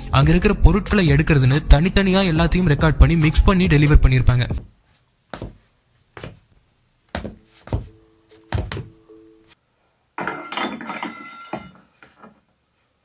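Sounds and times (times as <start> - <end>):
heavy footsteps on floor: 4.6 - 9.0
objects clattering with metallic ring: 10.2 - 12.0.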